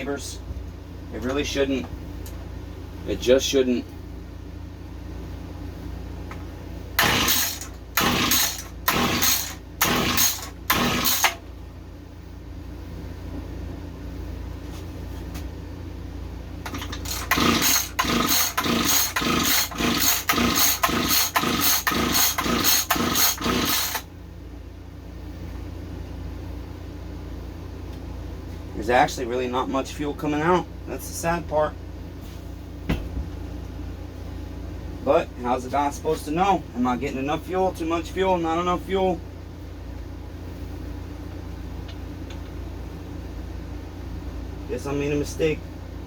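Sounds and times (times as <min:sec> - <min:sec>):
recoil pull-cord cranking engine: 0:07.0 - 0:11.4, 0:16.6 - 0:24.1.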